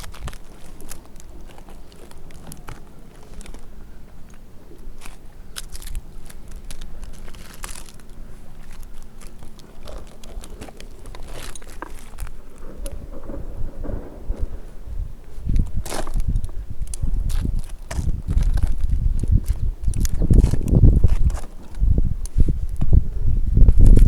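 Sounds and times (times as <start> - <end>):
low rumble: 0.0 - 21.2
dry bark crunching and crackling: 0.0 - 23.0, 23.6 - 24.0.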